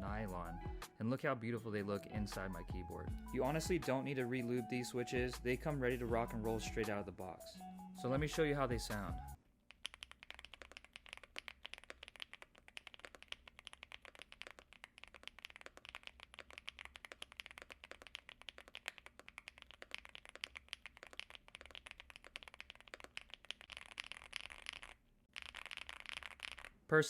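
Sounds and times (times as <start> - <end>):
mechanical keyboard typing: 9.8 - 26.7.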